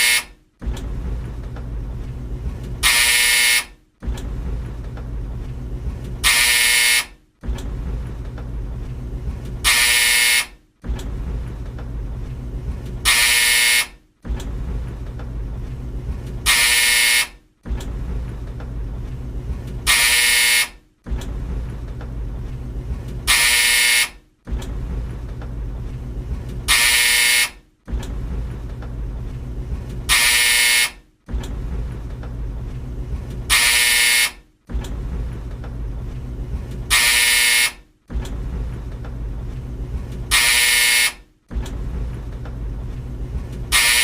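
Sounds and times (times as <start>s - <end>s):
dryer buzzer: 0.0s - 0.4s, 2.8s - 3.8s, 6.2s - 7.2s, 9.6s - 10.7s, 13.0s - 14.0s, 16.4s - 17.4s, 19.8s - 20.8s, 23.2s - 24.3s, 26.6s - 27.7s, 30.1s - 31.1s, 33.5s - 34.5s, 36.9s - 37.9s, 40.3s - 41.3s, 43.7s - 44.0s
tumble dryer drum rumble: 0.0s - 10.0s, 10.6s - 33.8s, 34.4s - 44.0s.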